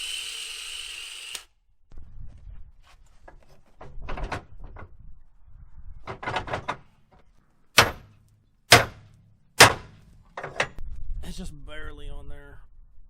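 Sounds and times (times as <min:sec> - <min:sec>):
metal clanks and rattles: 0:03.2 - 0:05.1, 0:06.0 - 0:10.8
hammer striking steel: 0:07.8 - 0:10.8.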